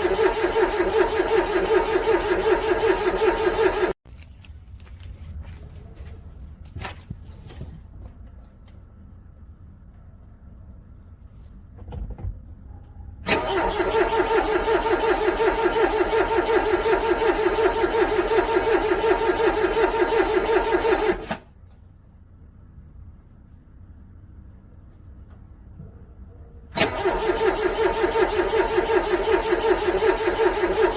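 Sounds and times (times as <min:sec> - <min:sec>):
car starter motor cranking: 0:00.0 - 0:04.0, 0:13.2 - 0:21.5, 0:26.7 - 0:30.9.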